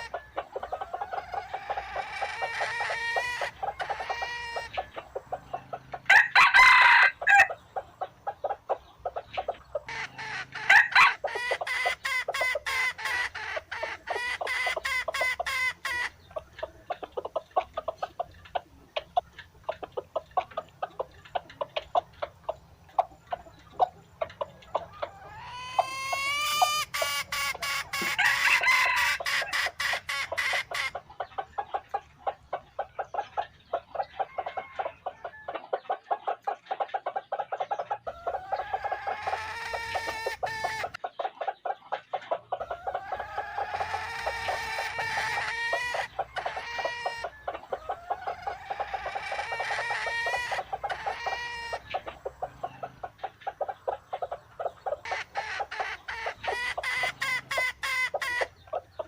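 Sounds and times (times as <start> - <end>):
roosters crowing: 0.0 - 7.6, 9.8 - 16.2, 24.8 - 31.0, 34.0 - 35.6, 38.0 - 41.0, 42.6 - 53.7, 54.8 - 59.0
chickens clucking: 0.0 - 59.0.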